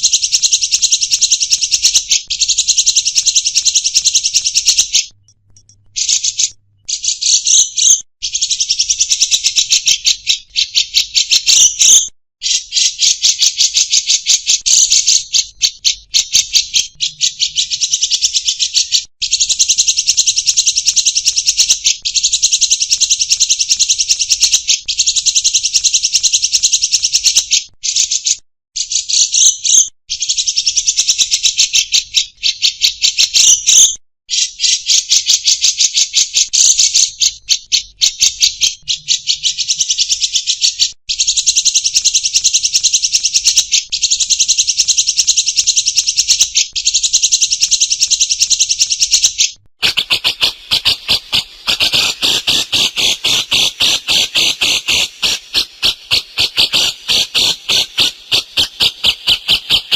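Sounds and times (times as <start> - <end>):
songbird buzzy trills: 0.0 - 28.2, 49.8 - 59.9.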